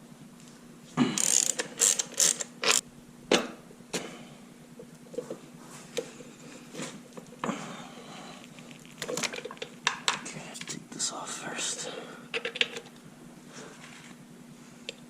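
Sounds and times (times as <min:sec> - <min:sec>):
ratchet wrench rasping: 0:01.2 - 0:02.8.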